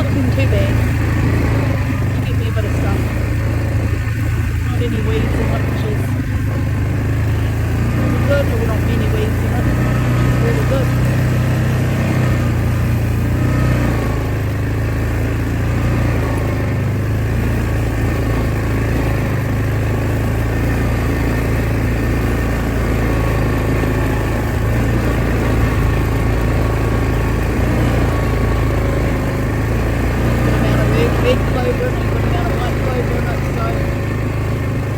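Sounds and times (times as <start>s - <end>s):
farm vehicle engine running: 0.0s - 34.9s.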